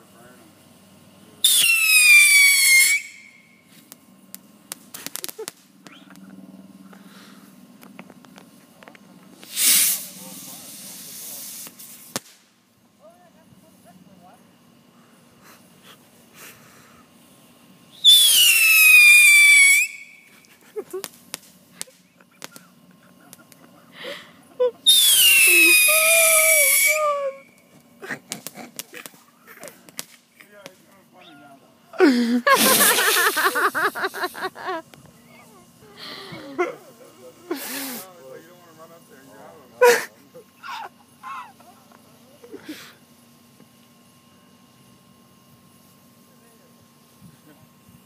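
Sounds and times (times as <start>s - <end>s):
bottle rocket whistle: 1.4s - 3.6s, 17.9s - 20.4s, 24.8s - 27.6s
whistling fireworks: 1.4s - 6.3s, 9.4s - 12.6s, 17.9s - 23.7s, 24.8s - 30.8s, 32.5s - 34.6s
sharp pops and crackles: 2.6s - 7.0s, 7.8s - 10.1s, 11.1s - 12.6s, 18.0s - 23.8s, 24.8s - 31.1s.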